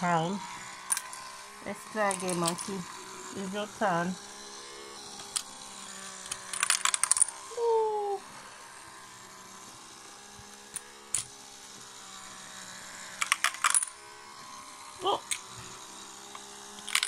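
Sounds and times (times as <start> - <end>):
motorized pusher hum: 0.0 - 17.0
plastic counters clattering: 6.2 - 7.4, 13.2 - 13.9, 16.4 - 17.0.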